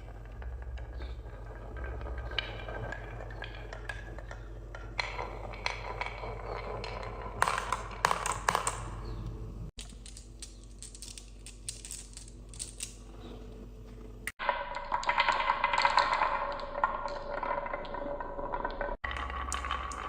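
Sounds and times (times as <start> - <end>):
marbles clattering down wooden track: 0.0 - 9.0, 14.4 - 20.0.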